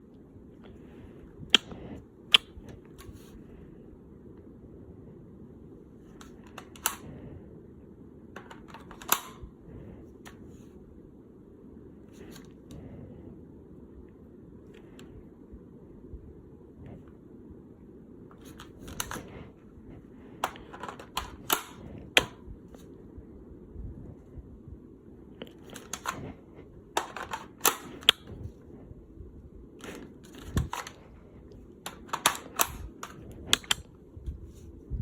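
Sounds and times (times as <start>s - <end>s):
rifle reloading clicks: 6.2s - 7.0s, 8.4s - 9.5s, 18.4s - 19.3s, 20.4s - 22.4s, 25.6s - 26.2s, 27.0s - 28.3s, 29.8s - 31.0s, 31.8s - 33.9s.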